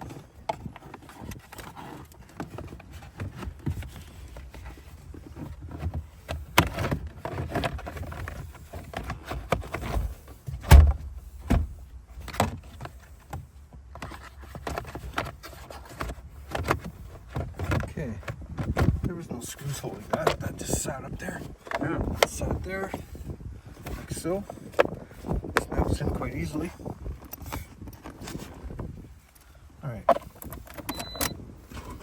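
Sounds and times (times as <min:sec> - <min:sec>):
car parts clicking and knocking: 0:00.0 - 0:32.0
heavy thump: 0:10.5 - 0:11.8.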